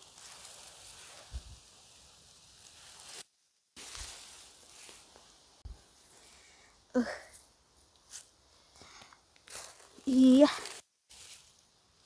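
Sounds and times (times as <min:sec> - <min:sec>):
leaves rustling: 0:00.0 - 0:12.0
steady hiss: 0:00.0 - 0:12.0.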